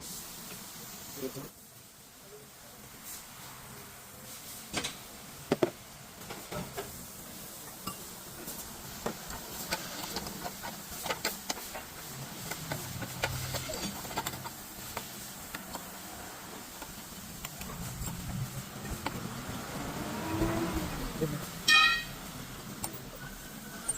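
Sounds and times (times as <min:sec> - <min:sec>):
hand tools clicking and tapping: 0:09.0 - 0:15.9, 0:16.8 - 0:18.2.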